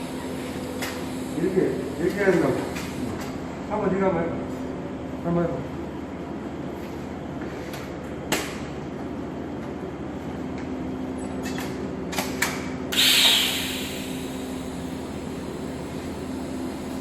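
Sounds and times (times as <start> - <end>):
machine hum: 0.0 - 17.0
loud hiss: 12.9 - 17.0.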